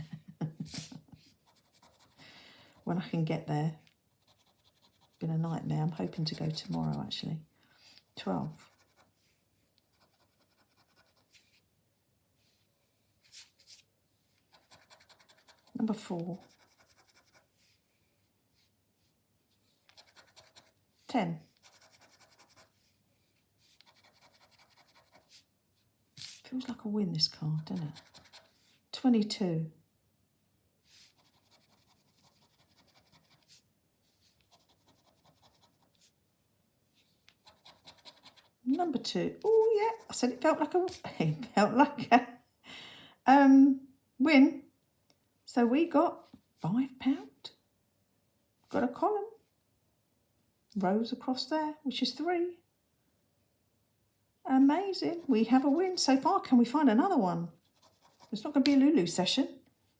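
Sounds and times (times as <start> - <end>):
scratch card being scratched: 14.5 - 15.8, 16.4 - 17.5, 19.8 - 20.8, 21.6 - 22.8, 23.8 - 25.4, 27.8 - 28.6, 31.0 - 33.6, 34.4 - 36.1, 37.3 - 38.6.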